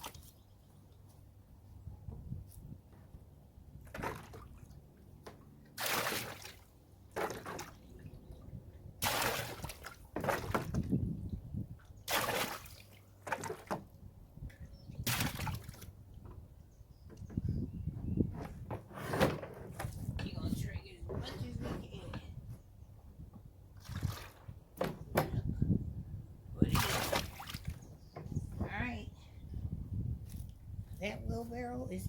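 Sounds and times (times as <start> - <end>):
water sloshing and pouring: 5.7 - 11.0, 11.8 - 13.8, 23.8 - 24.6, 26.7 - 27.8.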